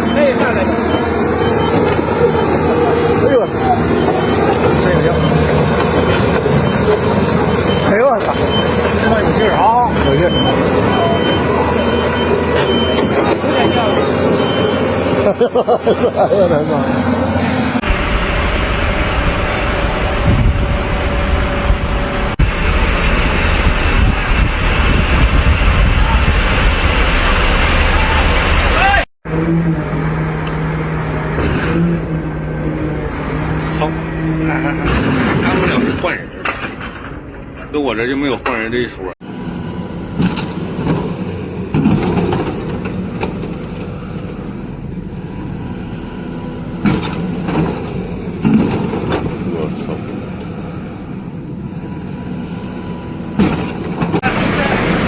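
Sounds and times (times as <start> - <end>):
heavy machinery rumbling: 0.0 - 55.0
wind buffeting microphone: 17.8 - 27.2.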